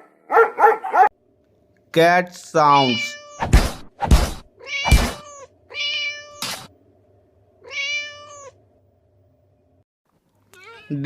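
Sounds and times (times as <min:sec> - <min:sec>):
cat meowing: 0:02.7 - 0:03.4, 0:04.6 - 0:06.4, 0:07.6 - 0:08.6, 0:10.5 - 0:11.0.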